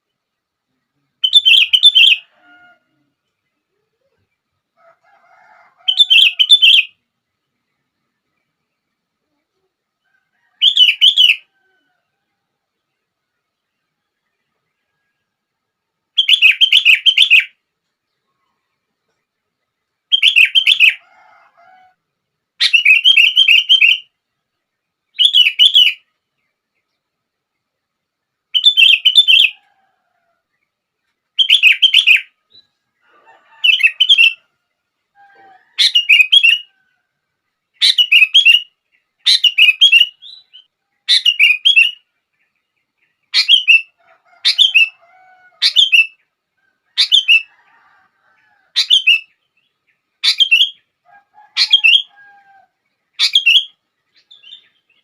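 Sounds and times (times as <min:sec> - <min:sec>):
bulbul whistled song: 0:22.6 - 0:24.1, 0:37.8 - 0:38.7, 0:39.3 - 0:42.0, 0:43.4 - 0:45.0, 0:50.2 - 0:50.8.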